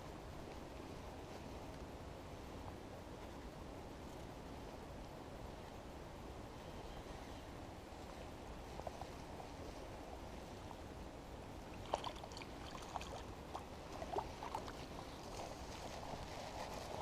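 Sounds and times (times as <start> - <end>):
river water: 8.7 - 17.0.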